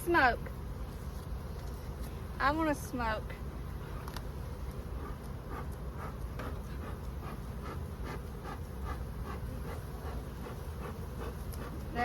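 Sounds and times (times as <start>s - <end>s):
bellows puffing air: 4.9s - 12.0s.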